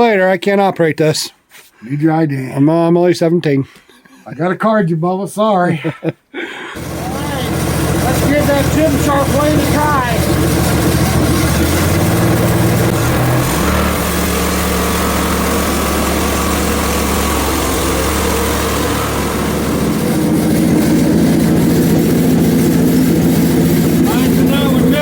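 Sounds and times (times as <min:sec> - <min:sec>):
band sawmill cutting log: 0:06.8 - 0:25.0.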